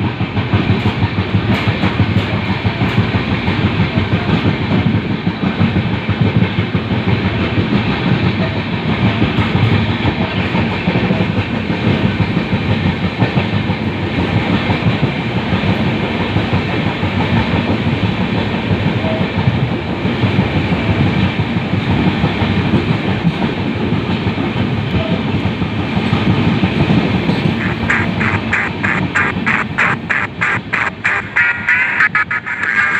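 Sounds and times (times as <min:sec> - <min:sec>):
train wheels rumbling on track: 0:00.0 - 0:32.9.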